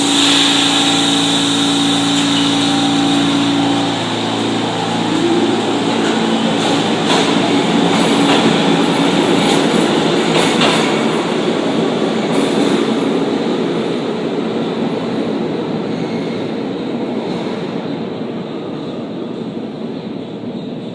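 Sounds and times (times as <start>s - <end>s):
wheel squeals: 0.0s - 10.5s
subway train wheels rumbling: 0.0s - 20.9s.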